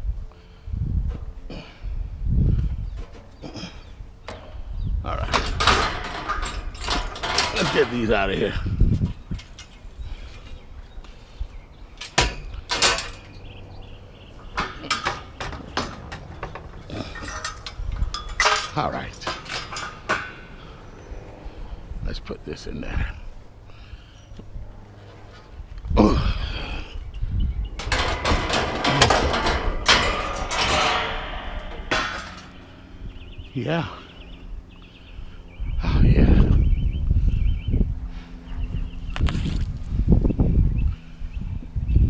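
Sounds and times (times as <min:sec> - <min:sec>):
scrap metal clanking: 0:02.9 - 0:10.6, 0:11.9 - 0:21.7, 0:27.8 - 0:33.4
loud metal bangs: 0:04.2 - 0:08.7, 0:12.0 - 0:21.7, 0:27.7 - 0:34.1
scrap clattering into truck bed: 0:27.8 - 0:32.7.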